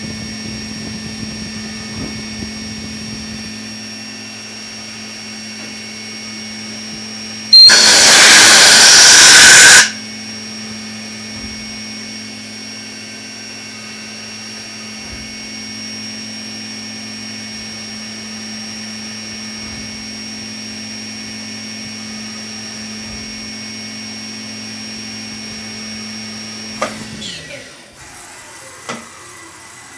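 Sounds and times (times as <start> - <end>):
high spindle whine: 0.0 - 27.8
milling machine hum: 0.0 - 29.9
loud hiss: 7.5 - 10.0.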